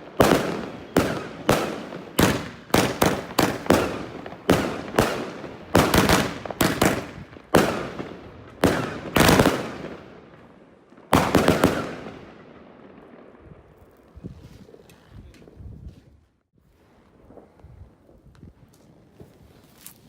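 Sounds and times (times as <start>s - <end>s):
fireworks bangs: 0.0s - 14.2s.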